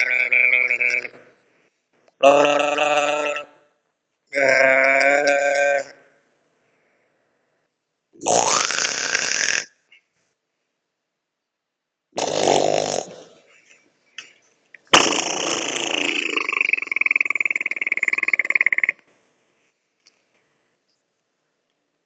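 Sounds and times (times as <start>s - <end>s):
person making strange vocal noises: 0.0s - 1.3s, 2.2s - 3.5s, 4.3s - 6.1s, 8.2s - 9.7s, 12.2s - 13.4s, 14.9s - 19.0s.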